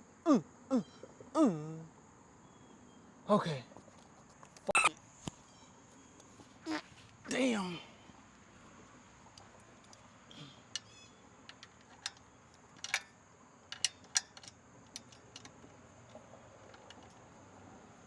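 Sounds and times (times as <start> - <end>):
hand tools clicking: 11.5 - 13.1, 13.7 - 17.3.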